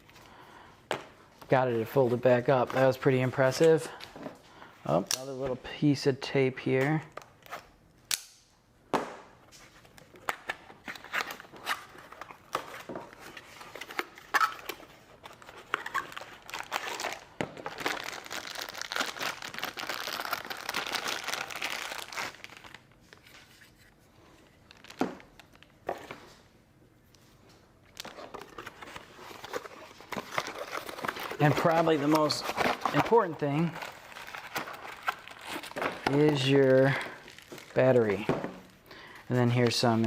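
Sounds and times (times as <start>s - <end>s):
packaging crinkling: 10.2s - 23.5s, 24.6s - 25.8s, 27.9s - 40.0s.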